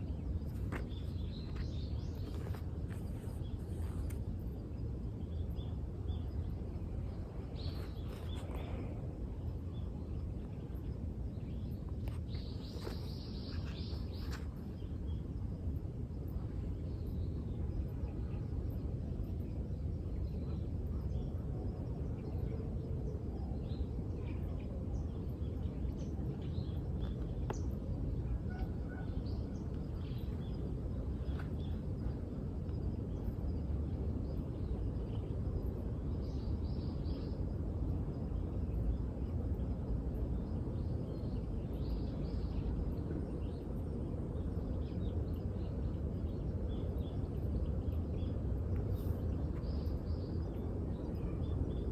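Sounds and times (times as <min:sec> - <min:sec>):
birds chirping: 0:00.0 - 0:15.2
low background noise: 0:00.0 - 0:51.9.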